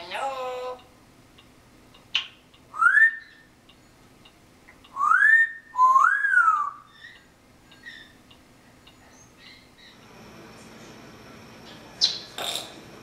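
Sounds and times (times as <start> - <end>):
parrot whistling: 2.7 - 3.5, 4.9 - 7.2.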